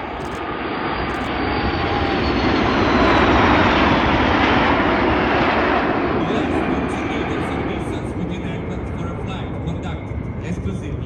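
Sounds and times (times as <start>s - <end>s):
jet passing low: 0.0s - 11.0s.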